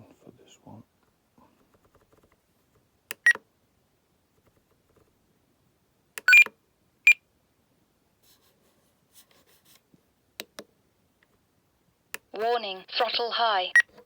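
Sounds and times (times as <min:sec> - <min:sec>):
radio transmitter beeping: 0:12.4 - 0:13.9.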